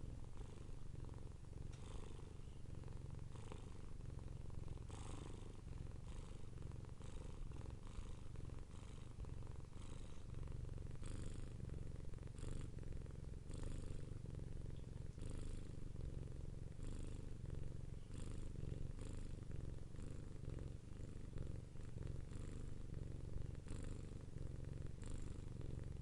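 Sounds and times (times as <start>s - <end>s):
cat purring: 0.0s - 26.0s.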